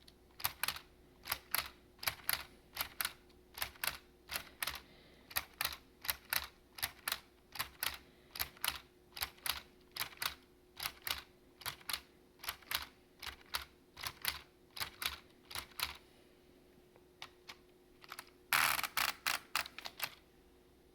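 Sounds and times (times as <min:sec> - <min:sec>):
toy typewriter keys clicking: 0:00.3 - 0:16.0, 0:17.2 - 0:20.2.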